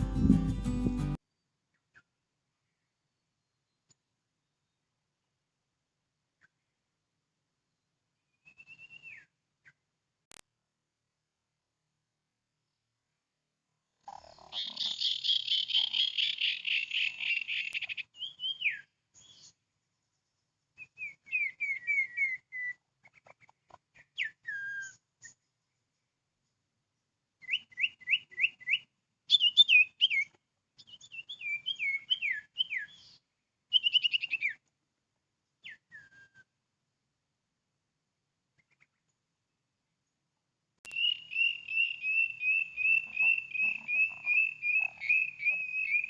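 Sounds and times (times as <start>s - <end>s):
bird trilling and whistling: 21.0s - 22.8s, 27.4s - 33.0s, 33.7s - 34.6s, 40.9s - 46.0s.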